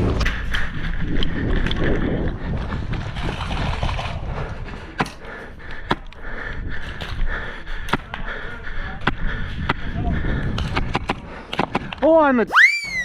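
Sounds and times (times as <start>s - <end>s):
person breathing: 4.2s - 12.0s.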